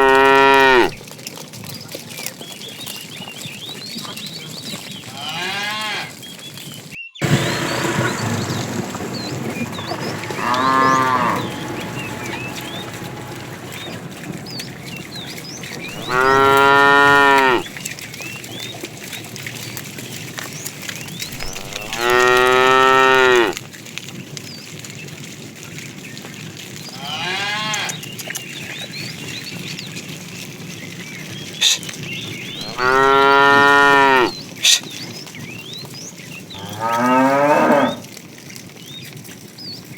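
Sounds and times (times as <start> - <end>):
cattle mooing: 0.0 - 1.0, 5.2 - 6.1, 9.7 - 17.7, 21.3 - 23.6, 27.0 - 28.0, 32.6 - 34.4, 36.6 - 38.1.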